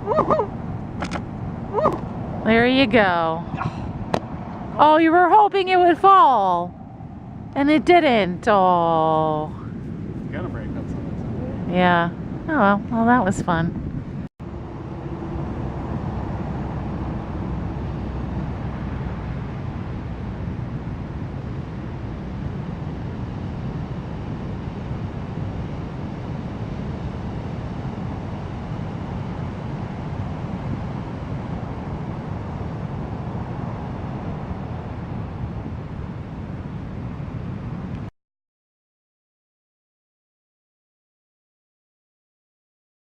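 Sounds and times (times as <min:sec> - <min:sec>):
wind on microphone: 0:00.0 - 0:38.1
ocean surf rushing: 0:09.0 - 0:13.6, 0:14.4 - 0:37.9.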